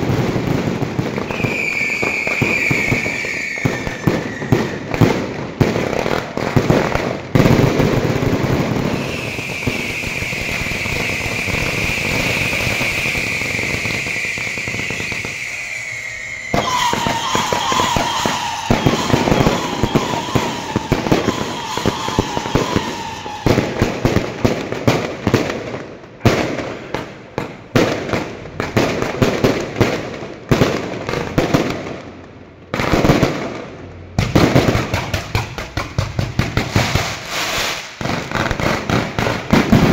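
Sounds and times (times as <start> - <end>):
falling firework whistle: 0.0 - 5.4, 8.6 - 24.4, 36.7 - 39.9
sharp firework bangs: 0.0 - 32.0, 34.2 - 39.9
firecrackers crackling: 0.0 - 39.9
high firework whistle: 1.0 - 5.4, 8.7 - 24.3, 36.8 - 39.0.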